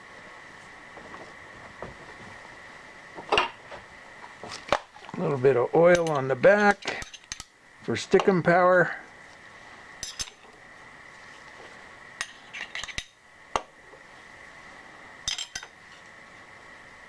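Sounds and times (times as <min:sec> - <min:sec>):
faint high whine: 0:00.0 - 0:17.0
metal parts clinking and tapping: 0:05.9 - 0:07.5, 0:10.0 - 0:10.5, 0:12.2 - 0:13.1, 0:15.3 - 0:15.7.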